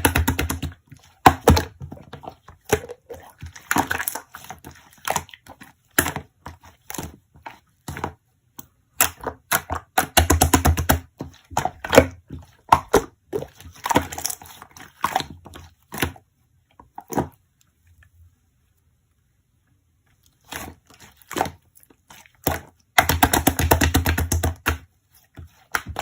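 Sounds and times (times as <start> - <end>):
wet squashing of slime: 0.0 - 8.2, 8.9 - 17.4, 20.2 - 26.0.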